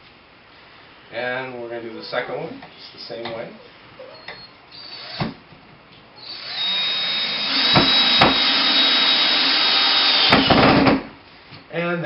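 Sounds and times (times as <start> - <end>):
power drill whining: 4.2 - 5.3, 6.2 - 10.6
sharp knocks: 7.6 - 8.6, 10.2 - 11.1.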